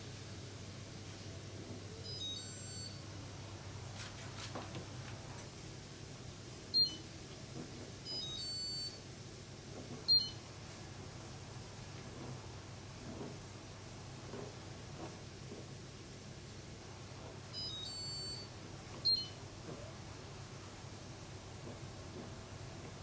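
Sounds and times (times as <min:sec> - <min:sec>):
washing machine electronic beeps: 0:01.9 - 0:03.3, 0:06.6 - 0:09.1, 0:09.8 - 0:10.6, 0:17.1 - 0:23.0.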